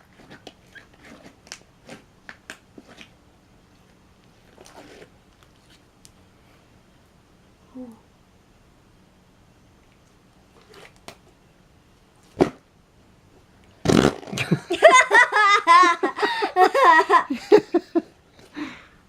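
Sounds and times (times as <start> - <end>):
slime squeezing fart noises: 4.5 - 5.2, 13.8 - 14.5
girl laughing: 14.3 - 18.1.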